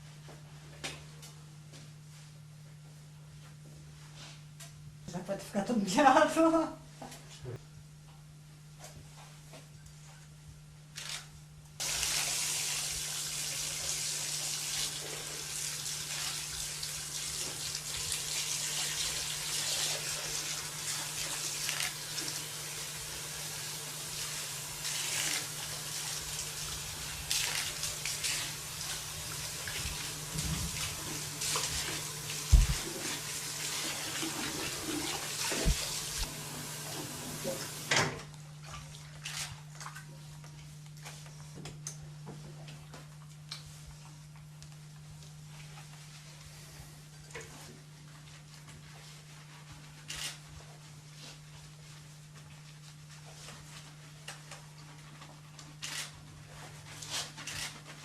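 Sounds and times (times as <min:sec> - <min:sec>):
water spraying onto hair: 0:11.8 - 0:37.9.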